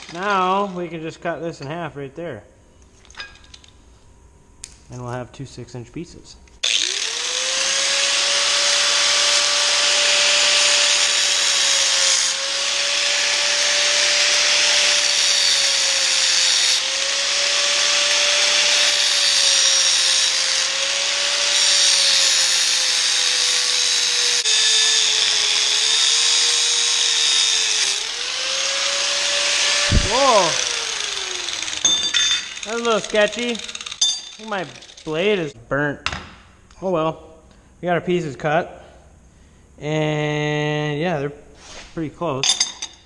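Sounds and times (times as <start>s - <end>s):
power saw cutting steel: 6.6s - 35.4s.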